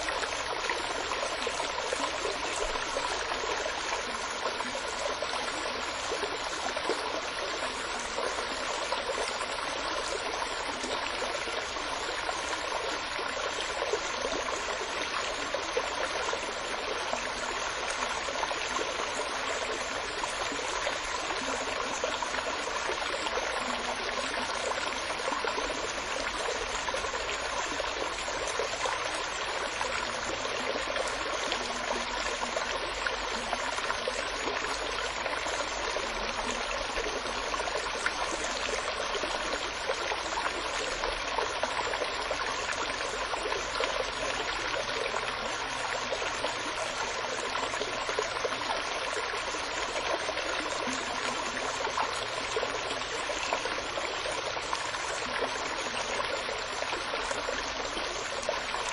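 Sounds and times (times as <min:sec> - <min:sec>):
running water rushing: 0:00.0 - 0:58.9.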